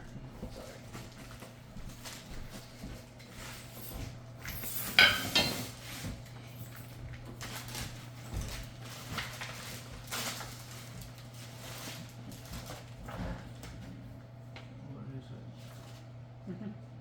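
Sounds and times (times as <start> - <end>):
light knocks and rustles: 0.4 - 13.9
hard pieces clattering together: 4.8 - 5.8.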